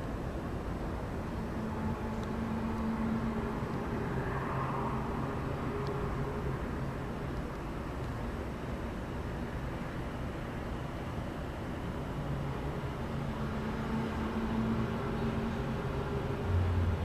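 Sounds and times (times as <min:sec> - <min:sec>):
low droning tones: 0:00.0 - 0:17.0.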